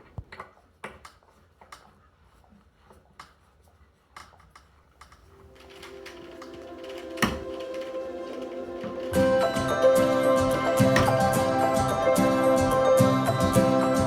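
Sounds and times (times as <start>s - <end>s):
music: 5.4s - 14.0s.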